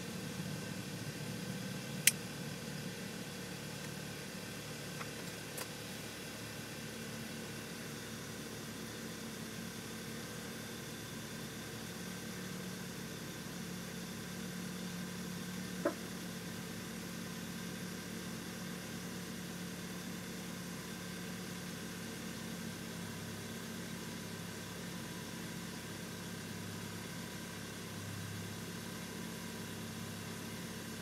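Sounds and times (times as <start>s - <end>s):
car engine idling: 0.0s - 31.0s.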